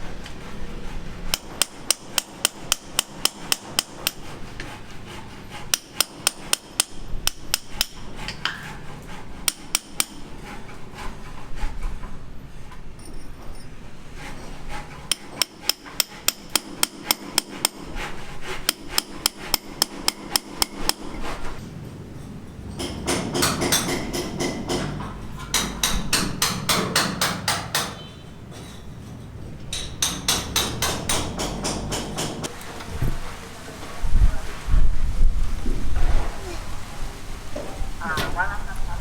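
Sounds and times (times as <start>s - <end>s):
hammer blows: 22.5s - 32.5s.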